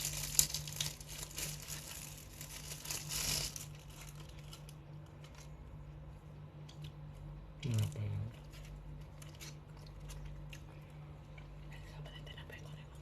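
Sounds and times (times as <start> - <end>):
food wrapper crinkling: 0.0 - 5.8, 7.6 - 10.8
steady low hum: 0.0 - 13.0.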